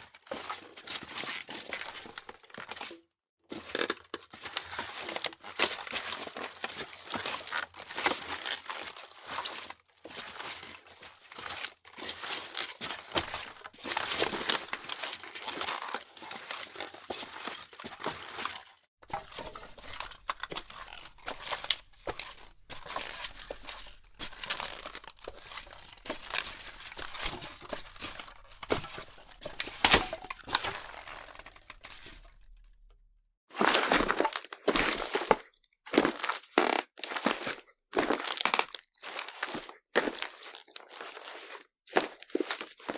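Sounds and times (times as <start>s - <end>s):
footsteps crunching: 19.0s - 32.9s.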